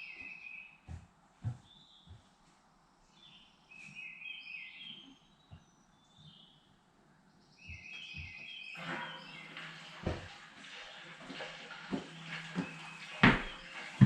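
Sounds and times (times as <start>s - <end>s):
small birds chirping: 0.0s - 9.5s.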